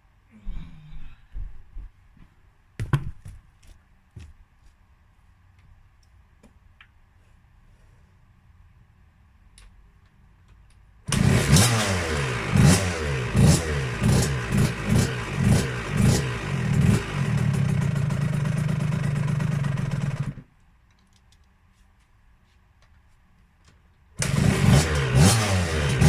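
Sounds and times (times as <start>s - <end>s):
dirt bike engine revving: 11.1s - 20.4s, 24.2s - 26.0s.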